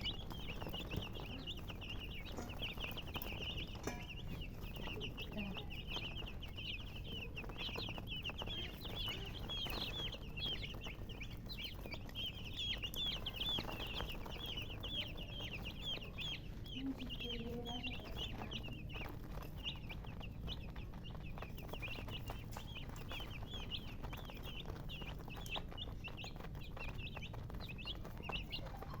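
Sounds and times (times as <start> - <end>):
baby chicks peeping: 0.0 - 29.0.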